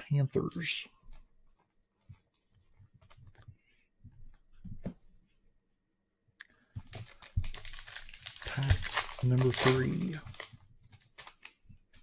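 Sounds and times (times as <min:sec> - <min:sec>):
card pack wrapper crinkling: 0:06.8 - 0:12.0.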